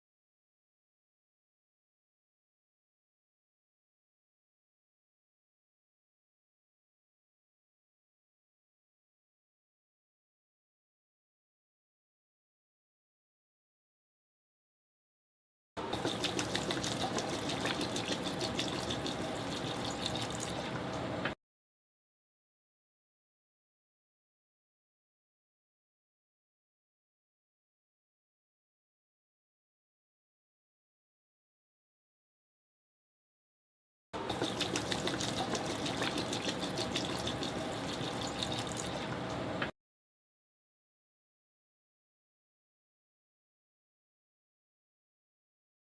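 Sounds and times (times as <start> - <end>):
water pouring into container: 15.9 - 20.7, 34.2 - 39.4.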